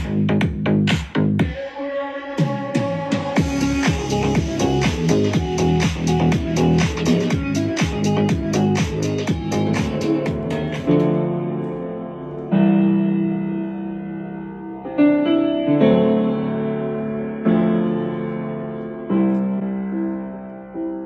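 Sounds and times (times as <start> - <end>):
piano chords through speaker: 0.0 - 21.0.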